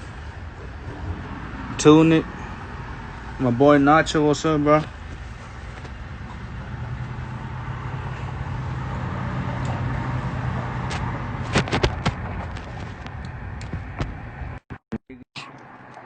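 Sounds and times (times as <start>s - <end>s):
vehicle engine idling: 0.0s - 14.6s
sharp cracks: 10.8s - 14.2s.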